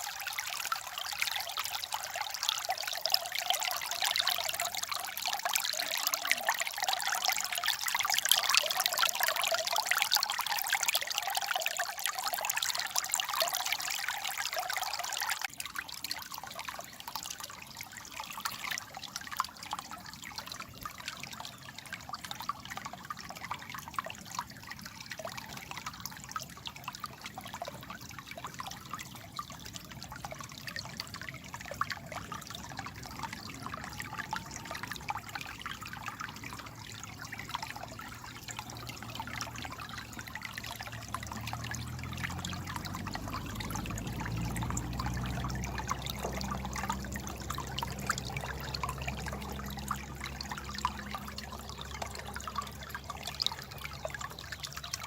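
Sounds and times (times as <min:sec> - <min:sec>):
water trickling and babbling: 0:00.0 - 0:55.0
low droning rumble: 0:40.9 - 0:52.3.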